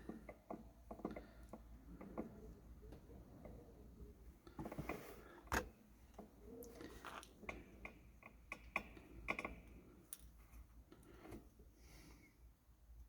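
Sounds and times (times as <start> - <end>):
small clicks and taps of parts: 7.2 - 10.4.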